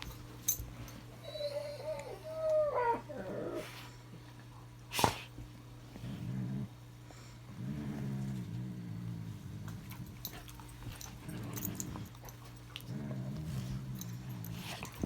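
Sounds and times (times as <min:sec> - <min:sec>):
dog whining: 0:01.2 - 0:03.8
dog growling: 0:01.6 - 0:03.8, 0:06.0 - 0:06.8, 0:07.5 - 0:15.0.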